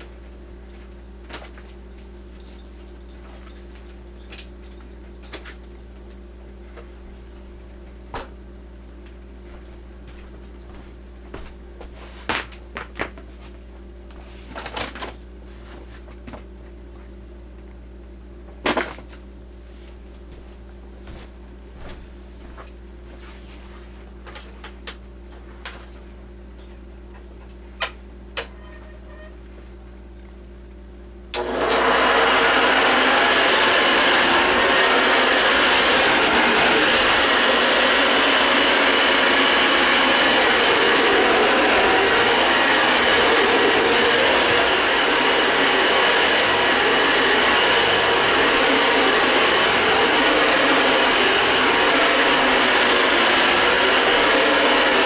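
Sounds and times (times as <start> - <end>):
vacuum cleaner running: 31.4 - 55.0.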